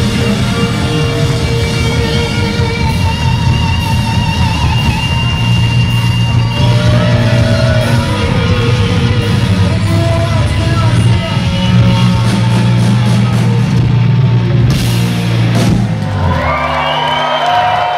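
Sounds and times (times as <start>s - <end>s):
distorted electric guitars: 0.0s - 17.0s
bass guitar: 0.0s - 17.9s
drum kit: 0.0s - 17.9s.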